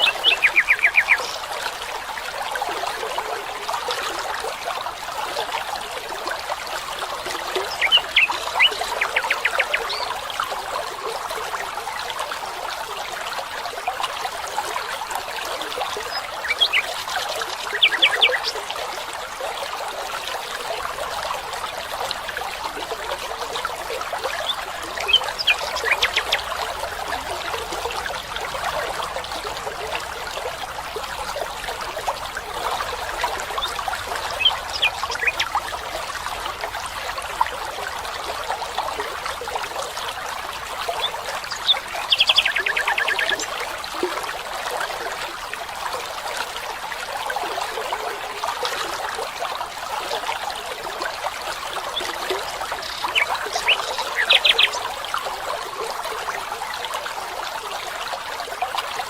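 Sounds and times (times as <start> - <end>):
stream trickling: 0.0 - 59.0.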